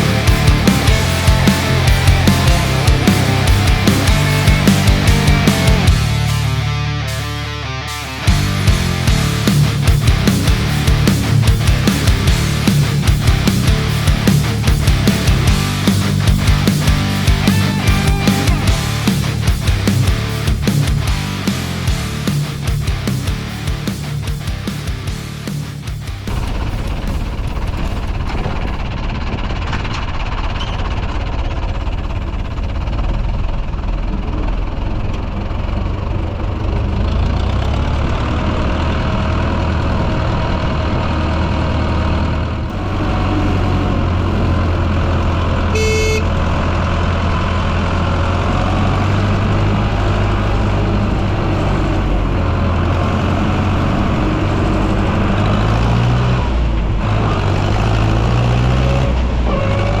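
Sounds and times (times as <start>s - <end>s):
tractor engine running: 0.0s - 25.3s, 25.9s - 59.5s
short horn toot: 45.7s - 46.4s.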